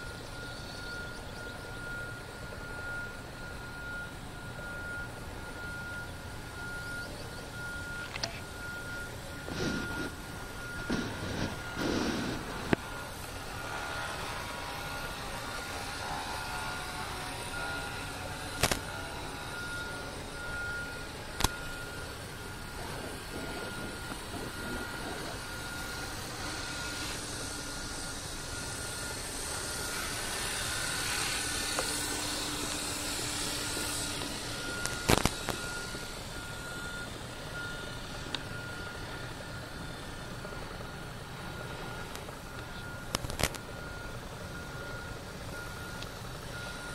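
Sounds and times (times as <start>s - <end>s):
radio-controlled helicopter rotor: 0.0s - 46.9s
sharp clicks: 8.0s - 8.4s.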